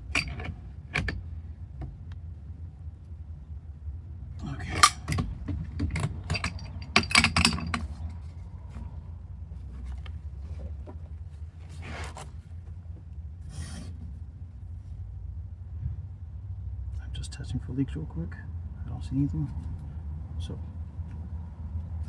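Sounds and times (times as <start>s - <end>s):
steady low rumble: 0.0s - 11.7s, 12.3s - 22.0s
scraping handling noises: 4.6s - 14.3s.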